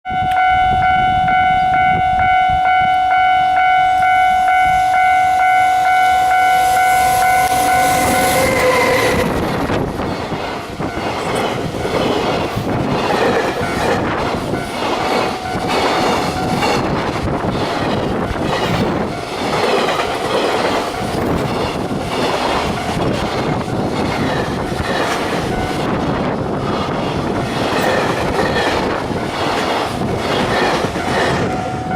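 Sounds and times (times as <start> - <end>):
locomotive horn blast: 0.1 - 9.3
train wheels clacking on rails: 3.6 - 31.9.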